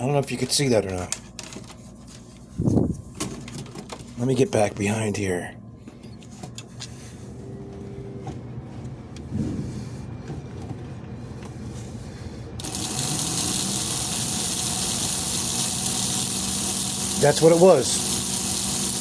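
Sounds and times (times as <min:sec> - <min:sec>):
low hum: 0:04.2 - 0:12.7
electric motor whirring: 0:12.6 - 0:19.0.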